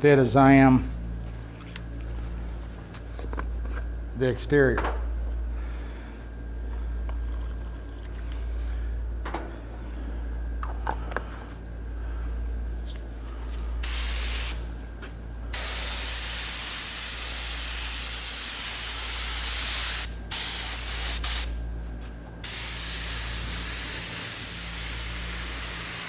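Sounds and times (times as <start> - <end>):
steady low hum: 0.0 - 26.0
spray gun hissing: 13.8 - 14.7, 15.5 - 21.6, 22.4 - 26.0.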